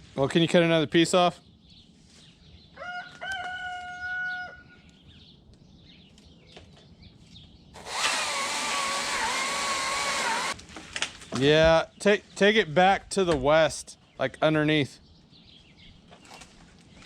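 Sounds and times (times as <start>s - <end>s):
rooster crowing: 2.8s - 4.8s
chainsaw cutting wood: 7.8s - 10.6s.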